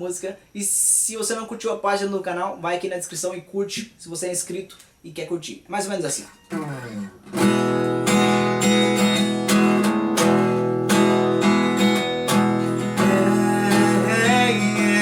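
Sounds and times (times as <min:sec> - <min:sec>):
guitar strumming chords: 0:06.4 - 0:15.0.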